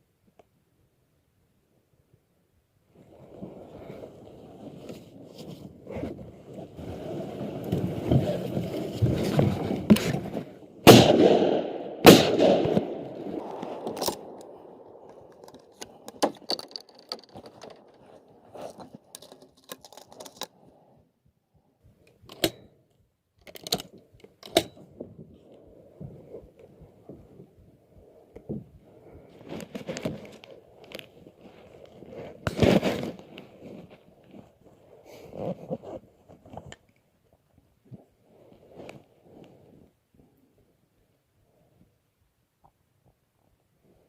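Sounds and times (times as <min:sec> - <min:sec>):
rustling noise: 0:02.9 - 0:10.7, 0:12.4 - 0:20.4, 0:24.8 - 0:40.6
shotgun shots: 0:10.9 - 0:14.9
scattered clicks and knocks: 0:13.4 - 0:18.1.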